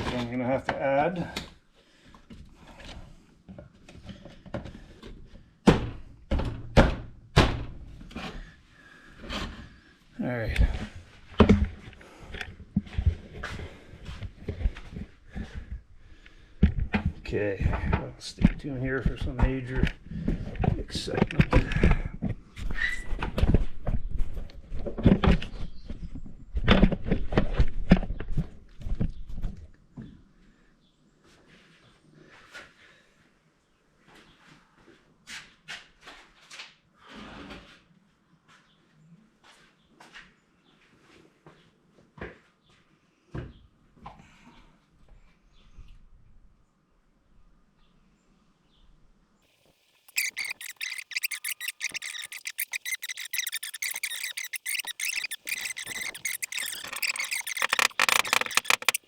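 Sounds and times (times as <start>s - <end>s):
irregular thumps and knocks: 50.1s - 59.0s.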